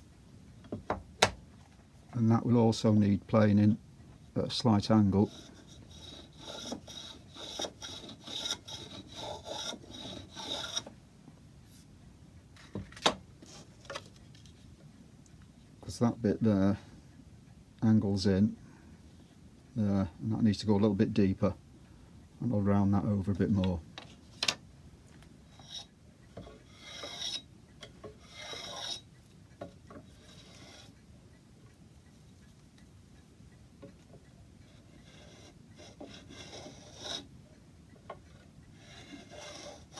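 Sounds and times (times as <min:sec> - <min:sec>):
plane shaving wood: 0:05.0 - 0:10.9, 0:26.4 - 0:27.4, 0:28.1 - 0:29.1, 0:30.0 - 0:31.0, 0:34.7 - 0:37.3, 0:38.7 - 0:39.9
hand tool rasping on wood: 0:05.1 - 0:10.9, 0:25.6 - 0:27.5, 0:28.1 - 0:29.1, 0:30.0 - 0:31.0, 0:34.6 - 0:37.3, 0:38.7 - 0:39.9.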